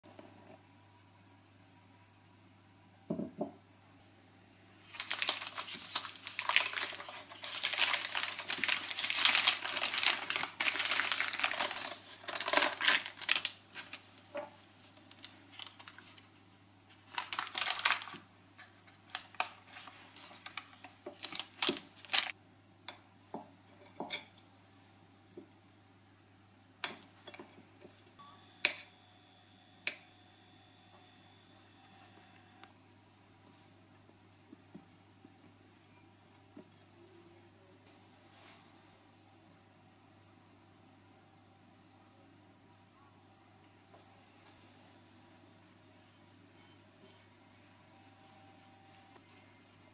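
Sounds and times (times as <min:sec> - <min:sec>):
packaging rustling and crinkling: 0:04.8 - 0:16.3, 0:16.9 - 0:22.3.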